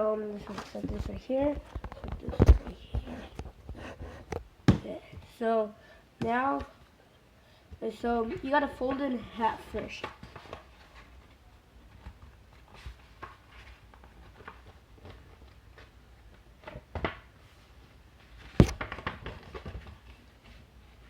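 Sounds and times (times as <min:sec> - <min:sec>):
thick paper rustling and folding: 0:12.0 - 0:15.9.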